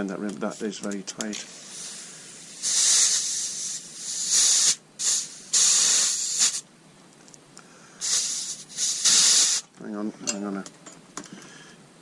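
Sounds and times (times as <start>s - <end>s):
compressed air hissing: 0.5s - 6.6s, 7.6s - 9.7s.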